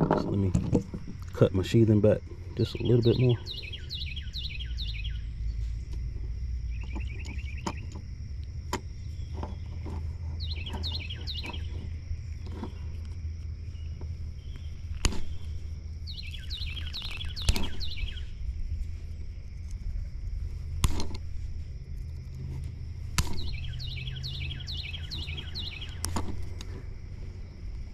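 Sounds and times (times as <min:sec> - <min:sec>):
songbird chirping: 0:00.0 - 0:27.9
steady low rumble: 0:00.0 - 0:27.9.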